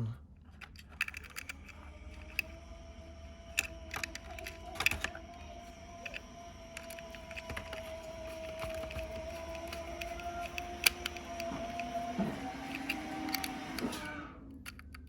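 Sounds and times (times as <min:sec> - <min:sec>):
wires and parts clicking: 0:00.3 - 0:15.0.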